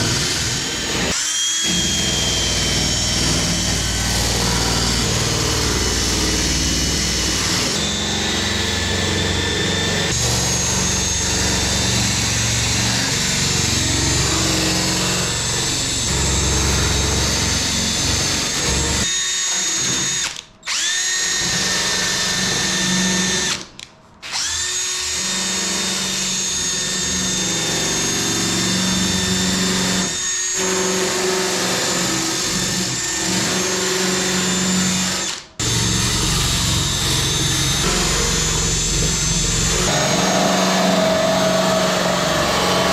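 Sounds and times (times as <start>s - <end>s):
rotary tool grinding metal: 28.6s - 42.9s.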